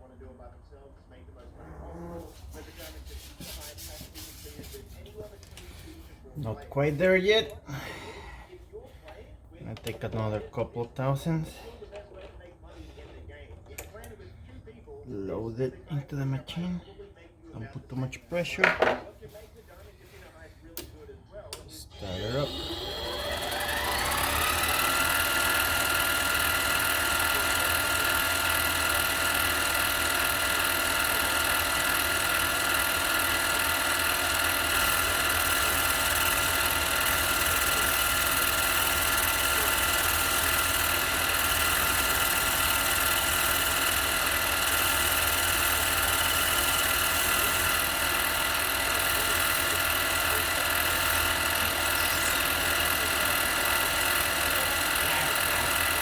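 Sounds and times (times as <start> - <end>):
lathe motor whine: 21.8 - 56.0.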